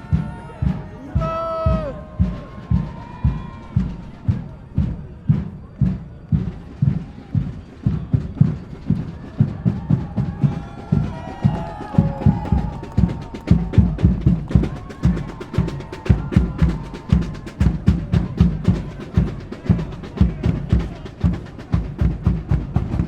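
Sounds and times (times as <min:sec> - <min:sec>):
soldiers marching on pavement: 0:00.0 - 0:23.0.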